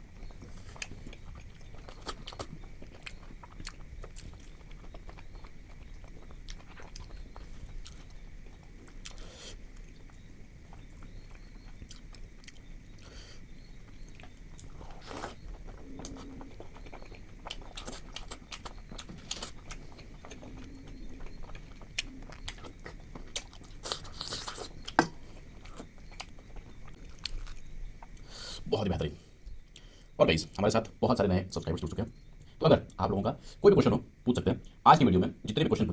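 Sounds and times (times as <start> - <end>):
person chewing food: 0.1 - 28.7.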